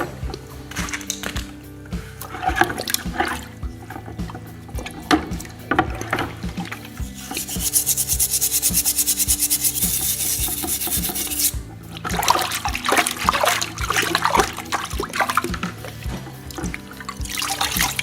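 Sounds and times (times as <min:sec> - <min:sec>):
sanding on metal: 0:07.0 - 0:11.6.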